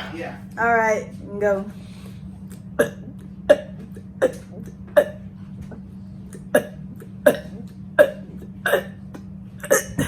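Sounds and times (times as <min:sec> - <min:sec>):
woman burping: 0:02.8 - 0:05.2, 0:06.4 - 0:10.0.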